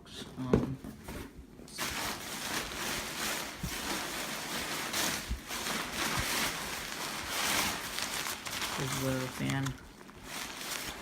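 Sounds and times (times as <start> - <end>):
fabric and packaging crinkling: 1.0 - 11.0.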